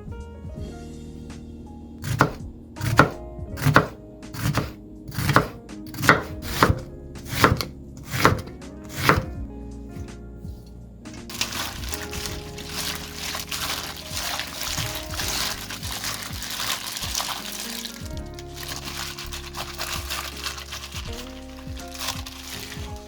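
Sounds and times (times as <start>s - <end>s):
background music: 0.0s - 23.0s
knife chopping on cutting board: 2.0s - 9.3s.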